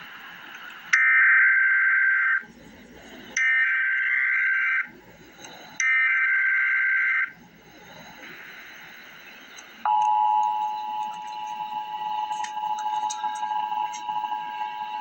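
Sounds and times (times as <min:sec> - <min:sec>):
warbling digital data tones: 0:08.4 - 0:15.0.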